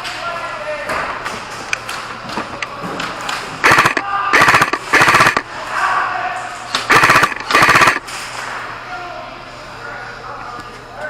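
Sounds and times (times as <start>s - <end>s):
electric airsoft gun bursts: 3.6s - 5.5s, 6.8s - 8.1s.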